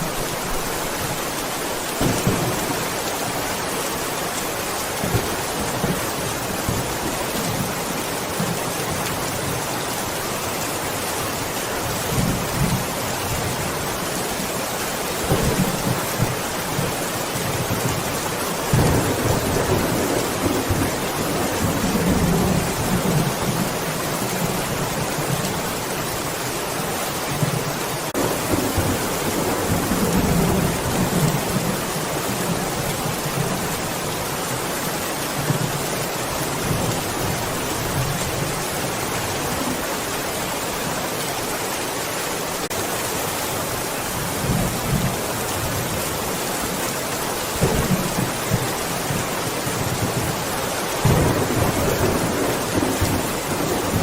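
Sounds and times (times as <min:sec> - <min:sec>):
steady rain falling: 0:00.0 - 0:54.0
thunder rumbling: 0:01.7 - 0:08.7, 0:15.1 - 0:24.9, 0:28.1 - 0:34.0, 0:47.5 - 0:54.0.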